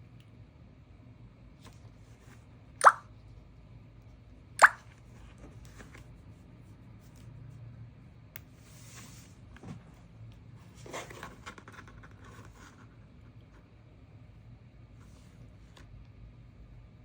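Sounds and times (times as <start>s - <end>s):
sharp pops: 4.6s - 4.8s.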